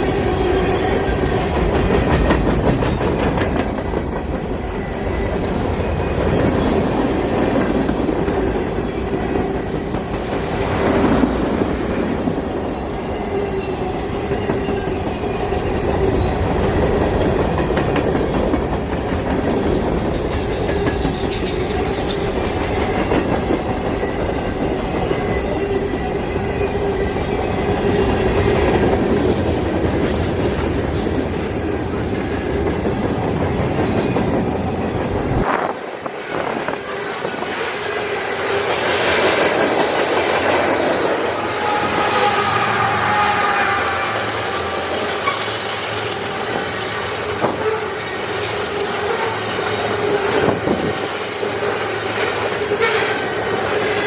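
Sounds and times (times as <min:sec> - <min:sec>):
train wheels rumbling: 0:00.0 - 0:54.0
wheels clacking over rail joints: 0:00.6 - 0:04.6.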